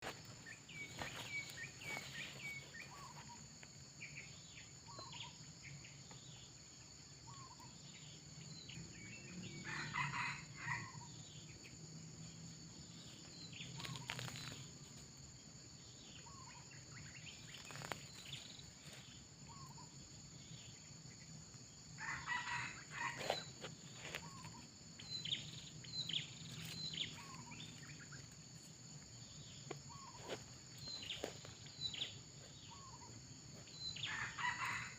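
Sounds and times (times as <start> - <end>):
rooster crowing: 9.6 - 11.0, 22.0 - 23.5, 34.0 - 34.9
faint chirps: 23.0 - 34.9.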